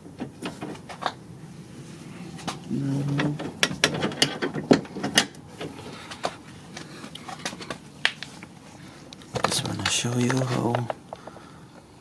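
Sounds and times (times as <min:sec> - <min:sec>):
metal lock parts clicking: 0:03.2 - 0:05.4.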